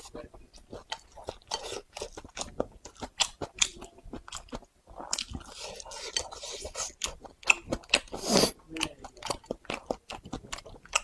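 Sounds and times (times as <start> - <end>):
person chewing and crunching: 0.0 - 11.0.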